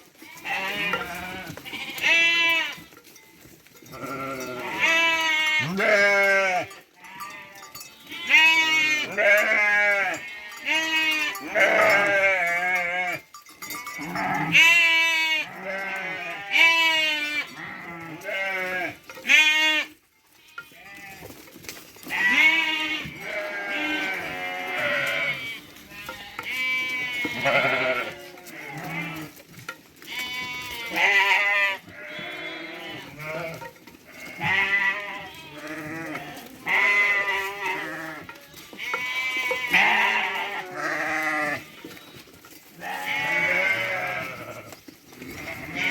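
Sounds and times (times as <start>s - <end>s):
sheep bleating: 0.2s - 2.9s, 3.9s - 21.3s, 22.0s - 29.4s, 30.0s - 45.9s.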